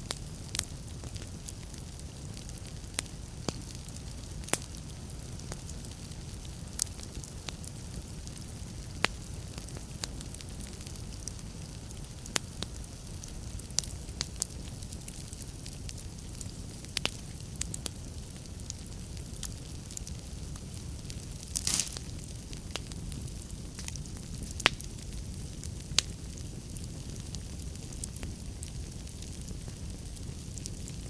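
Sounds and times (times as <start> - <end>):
fire crackling and popping: 0.0 - 31.0.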